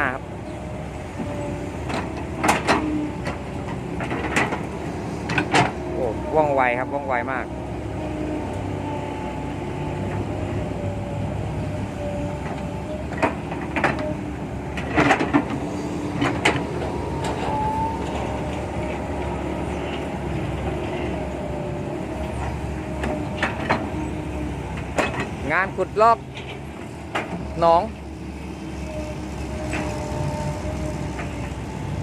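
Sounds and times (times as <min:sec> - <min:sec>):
diesel engine running: 0:00.0 - 0:32.0
hydraulic whine: 0:10.0 - 0:24.4.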